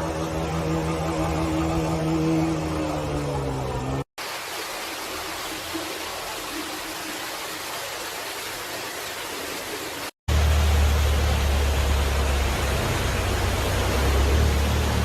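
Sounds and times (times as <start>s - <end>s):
rushing storm water: 4.2s - 15.0s.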